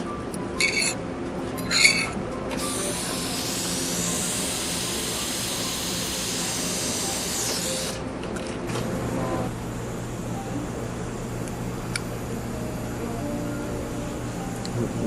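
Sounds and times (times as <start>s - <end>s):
dental equipment hissing: 1.6s - 8.0s.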